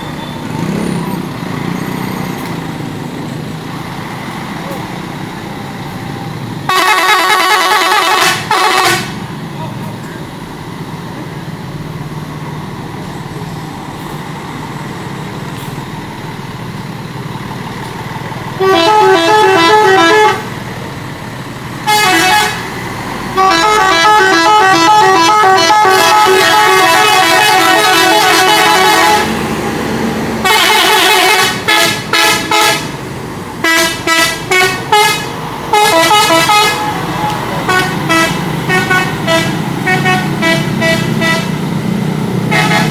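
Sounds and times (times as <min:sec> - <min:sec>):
bus engine rumble: 0:00.0 - 0:42.9
bus air horn trumpets: 0:06.6 - 0:09.2, 0:18.6 - 0:20.5, 0:21.8 - 0:22.7, 0:23.3 - 0:29.4, 0:30.4 - 0:33.0, 0:33.6 - 0:41.6, 0:42.5 - 0:42.9.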